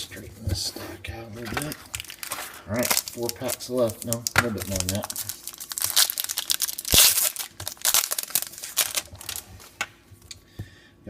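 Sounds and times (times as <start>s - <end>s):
wrapper crinkling and tearing: 1.4s - 9.8s.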